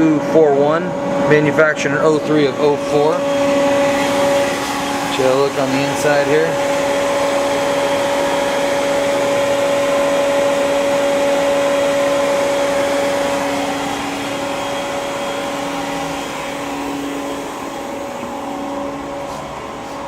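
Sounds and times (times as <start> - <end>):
machine motors and fans humming: 0.0 - 20.0.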